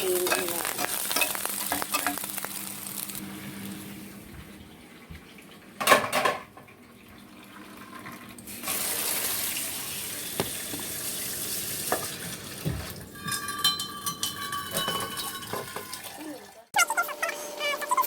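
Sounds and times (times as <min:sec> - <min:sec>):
kitchenware clatter: 0:00.0 - 0:02.3, 0:05.8 - 0:06.7, 0:11.9 - 0:16.2
dishes clinking: 0:05.8 - 0:06.7, 0:12.7 - 0:16.2
tap running into sink: 0:10.2 - 0:13.0.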